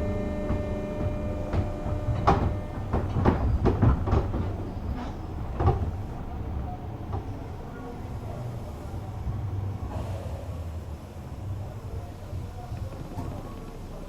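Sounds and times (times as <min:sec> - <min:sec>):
wheels knocking over rail joints: 0:00.0 - 0:07.3
train rumbling over track: 0:00.0 - 0:14.0.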